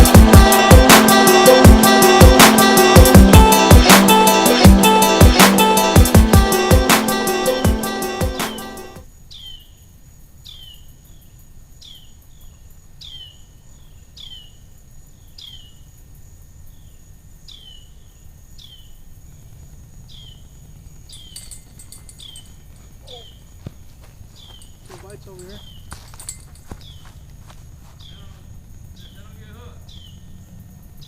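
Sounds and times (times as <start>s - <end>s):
high-pitched insect trill: 9.0s - 31.0s.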